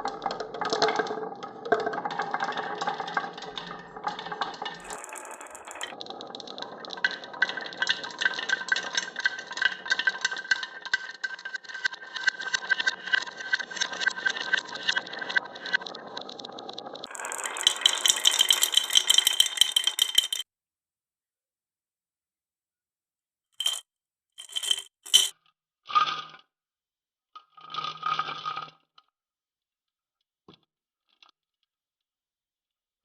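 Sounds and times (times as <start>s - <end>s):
marbles clattering in wooden run: 0.6s - 6.0s, 17.1s - 20.4s, 23.6s - 23.8s, 24.4s - 25.3s
sharp clinks: 4.8s - 5.9s, 17.2s - 20.4s, 23.6s - 23.8s, 24.4s - 25.3s.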